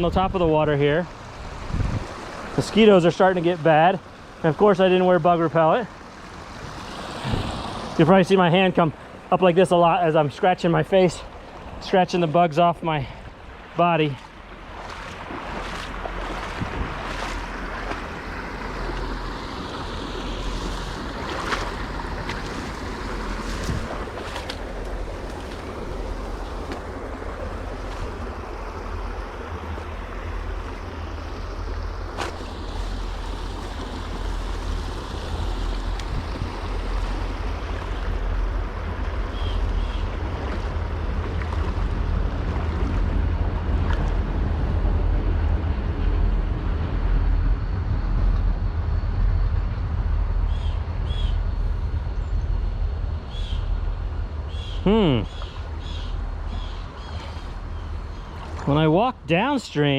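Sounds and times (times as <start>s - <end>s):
wind rumble on microphone: 0.0s - 4.0s, 6.1s - 8.9s, 13.2s - 58.7s
water splashing around wading legs: 13.2s - 44.3s, 55.4s - 58.9s.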